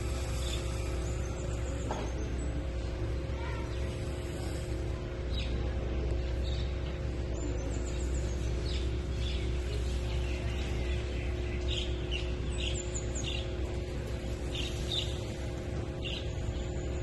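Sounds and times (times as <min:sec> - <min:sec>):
steady low hum: 0:00.0 - 0:17.0
small birds chirping: 0:06.2 - 0:17.0.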